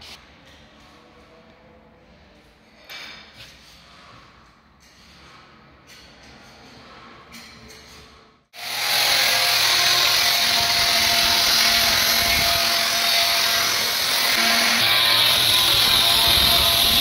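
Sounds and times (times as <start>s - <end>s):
electric power tool running: 8.6s - 17.0s.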